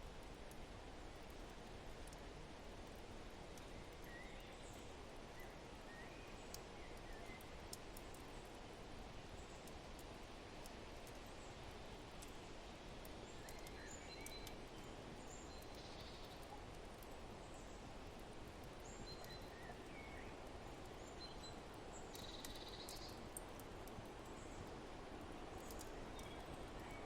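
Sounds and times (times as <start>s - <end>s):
faint sharp clicks: 0.2s - 2.2s, 2.8s - 4.9s, 6.5s - 8.6s, 9.4s - 14.6s, 15.3s - 17.2s, 18.2s - 20.0s, 21.2s - 27.0s.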